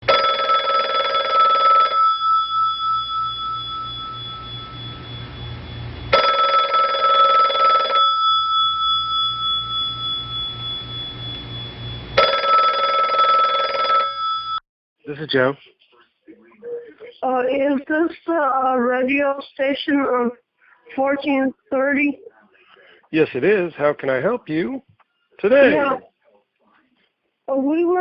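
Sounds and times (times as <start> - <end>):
telephone ringing: 0.0 - 14.6.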